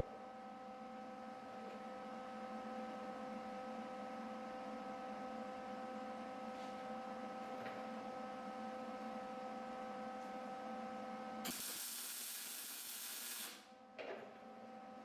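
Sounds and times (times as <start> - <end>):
pressurised gas hissing from nozzle: 11.5 - 13.6.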